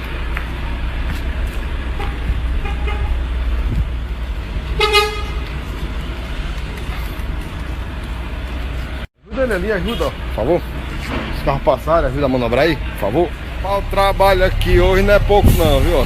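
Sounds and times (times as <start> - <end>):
vehicle horn toots: 2.0 - 3.2, 4.8 - 5.4.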